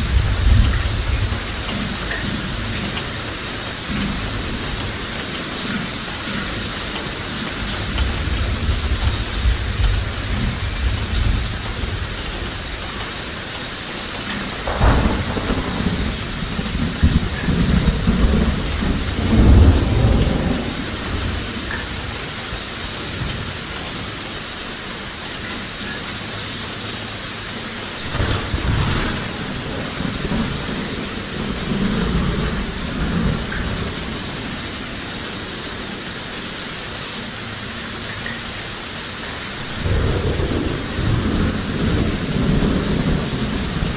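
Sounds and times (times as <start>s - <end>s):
thunder rumbling: 0.0s - 3.0s, 7.6s - 22.2s, 28.0s - 35.0s, 39.6s - 43.9s
heavy rain hissing: 0.0s - 43.9s.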